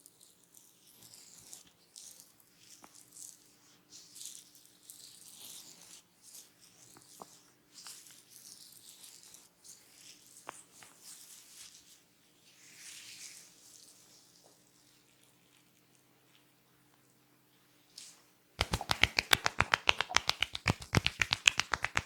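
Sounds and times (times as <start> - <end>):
hands rubbing skin and hair: 18.0 - 22.0.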